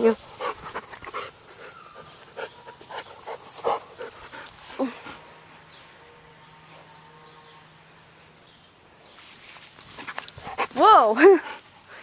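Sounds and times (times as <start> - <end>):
dog panting: 0.2 - 5.3, 10.4 - 12.0.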